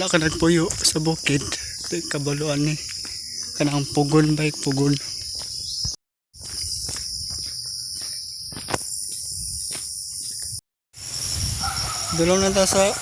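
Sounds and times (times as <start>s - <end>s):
insects chorus: 0.0s - 13.0s.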